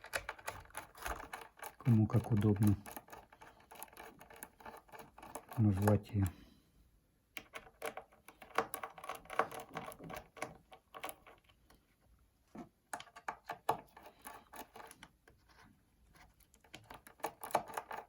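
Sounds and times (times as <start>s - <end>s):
screwdriver clicks and scrapes: 13.0s - 15.1s, 16.2s - 18.0s.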